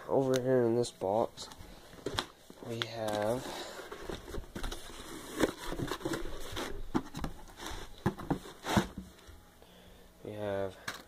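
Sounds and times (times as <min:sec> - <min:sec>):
cardboard boxes being handled: 0:02.0 - 0:09.2.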